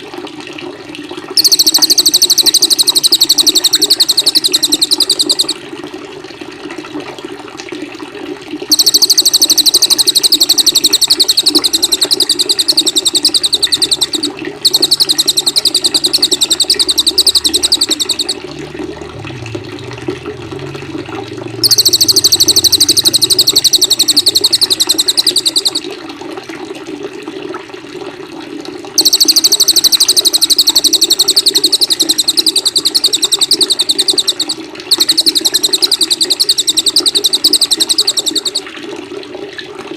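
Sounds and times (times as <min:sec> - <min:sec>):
running water: 0:01.3 - 0:07.1, 0:08.6 - 0:26.1, 0:29.0 - 0:39.2
songbird high trill: 0:01.4 - 0:05.6, 0:08.7 - 0:18.4, 0:21.6 - 0:25.8, 0:29.0 - 0:38.6.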